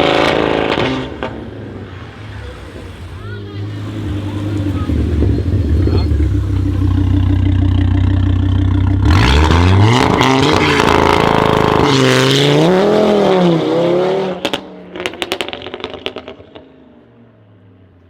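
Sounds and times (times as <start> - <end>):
car engine revving: 0.0 - 16.6
exhaust crackles and pops: 3.8 - 11.8.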